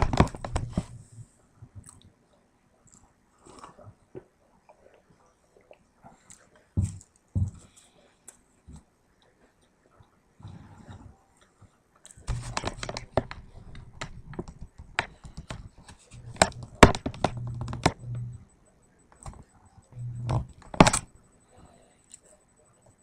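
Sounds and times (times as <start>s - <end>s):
sharp clicks: 12.1s - 18.5s, 19.1s - 21.2s
scratchy rustling: 12.3s - 18.4s
low hum: 15.6s - 23.0s.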